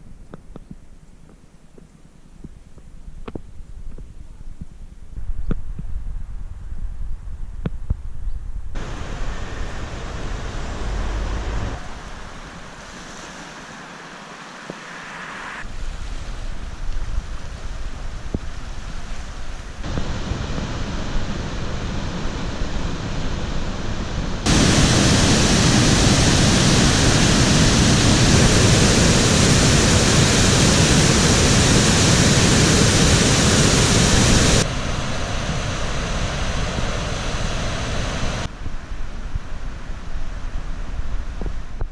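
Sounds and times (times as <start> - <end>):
rushing river water: 8.8 - 15.4, 19.8 - 38.5.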